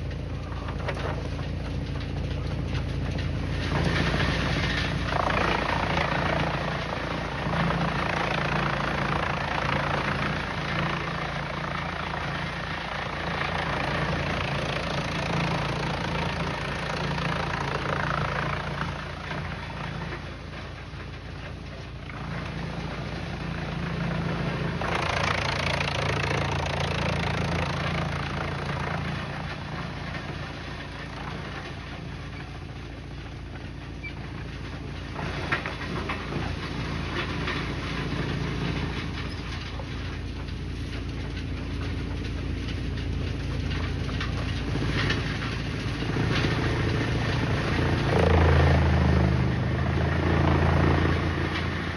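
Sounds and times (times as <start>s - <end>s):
engine hum: 0.0s - 51.9s
wood chipper grinding: 0.0s - 51.9s.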